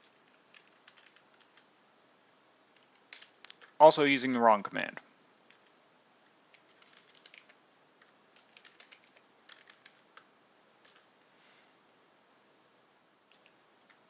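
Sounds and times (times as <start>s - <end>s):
faint keyboard typing: 0.0s - 1.7s, 2.7s - 3.9s, 5.4s - 5.8s, 6.5s - 11.2s, 13.2s - 14.0s.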